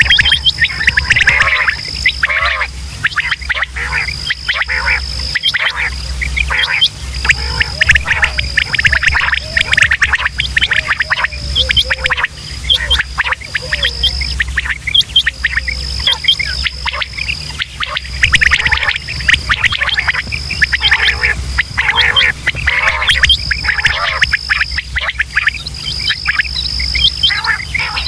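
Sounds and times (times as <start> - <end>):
high insect-like trill: 0.0 - 28.0
low hum: 0.0 - 28.0
quail chattering calls: 0.0 - 28.0.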